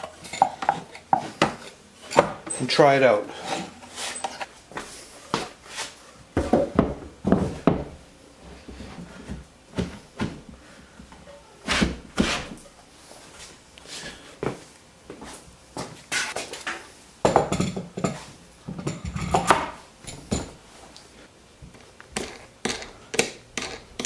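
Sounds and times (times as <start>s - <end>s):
wooden knocks and thunks: 6.4s - 8.0s.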